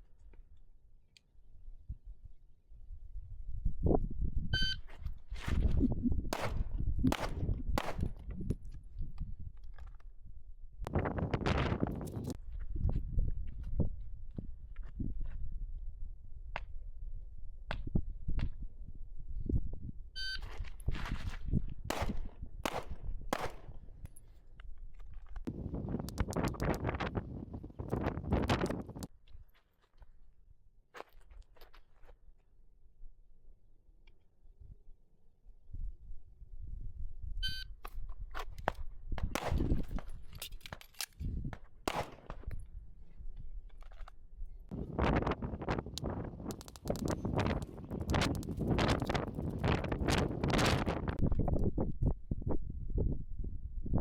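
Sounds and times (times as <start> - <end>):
shot timer beep: 4.6 - 4.8, 37.4 - 37.7
pistol shots: 6.3 - 8.2, 21.9 - 23.8, 39.3 - 40.0, 41.8 - 42.4.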